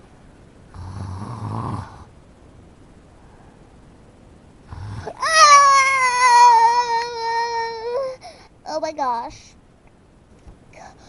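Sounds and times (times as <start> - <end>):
child snoring: 0.7 - 2.1, 4.7 - 8.0
child screaming: 5.2 - 8.2.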